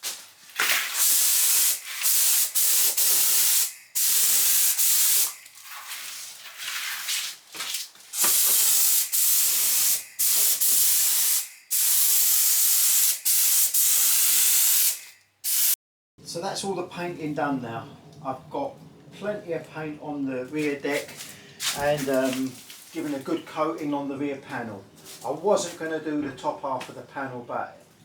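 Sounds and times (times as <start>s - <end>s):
spray gun hissing: 0.9s - 5.4s, 8.2s - 15.8s.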